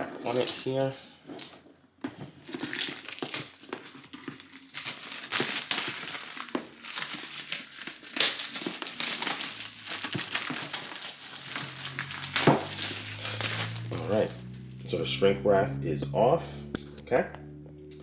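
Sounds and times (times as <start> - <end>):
plastic wrap crinkling and tearing: 0.0 - 1.6, 2.2 - 14.8.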